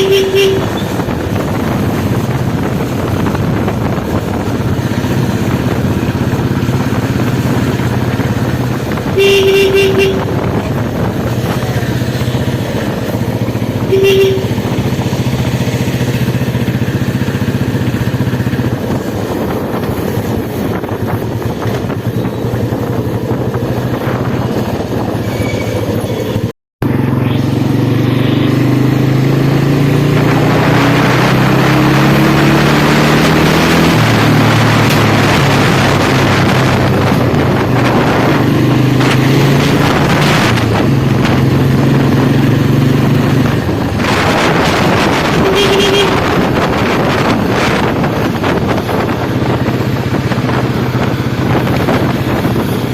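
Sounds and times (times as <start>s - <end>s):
wind noise: 0.0s - 26.5s, 27.1s - 52.9s
motorcycle engine accelerating: 0.0s - 52.9s.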